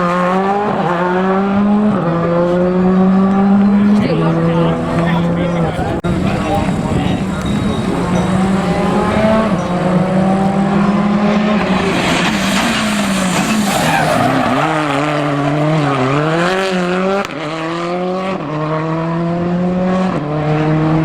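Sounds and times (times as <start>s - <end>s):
rally car engine: 0.0s - 21.0s
tyres skidding: 0.9s - 17.3s.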